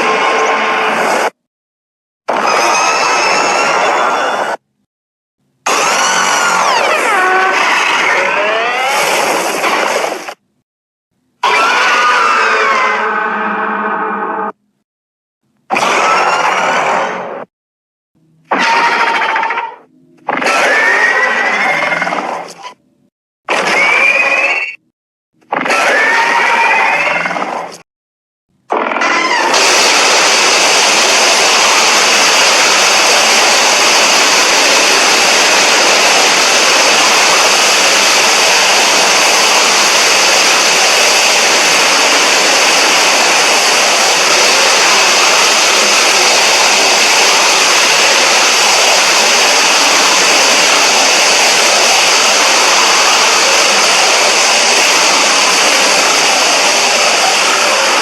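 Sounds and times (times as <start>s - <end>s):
rushing energy beam noise: 5.6s - 10.4s, 29.2s - 58.0s.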